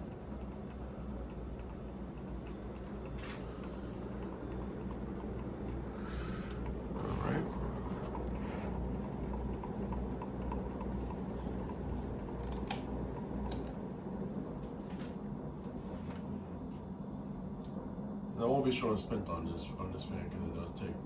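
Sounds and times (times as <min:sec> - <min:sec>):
ceiling fan motor humming: 0:00.0 - 0:21.0.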